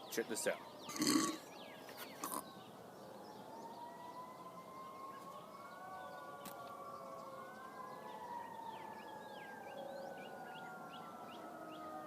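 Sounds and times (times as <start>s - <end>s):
bird chirps: 0.0s - 11.9s
faint siren wailing: 2.6s - 12.0s.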